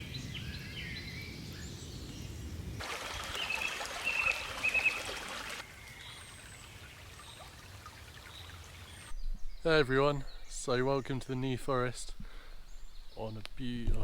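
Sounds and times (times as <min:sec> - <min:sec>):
small birds calling: 0:00.0 - 0:14.0
stream water running: 0:02.8 - 0:09.2.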